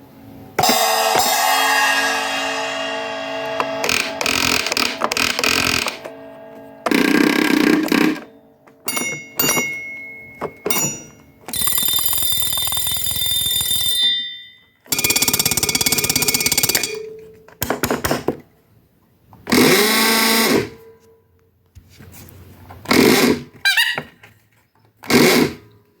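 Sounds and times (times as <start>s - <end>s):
bell strikes: 0.6s - 11.5s
long ringing bell: 0.7s - 17.4s
sustained pitch-bending tone: 0.9s - 8.8s.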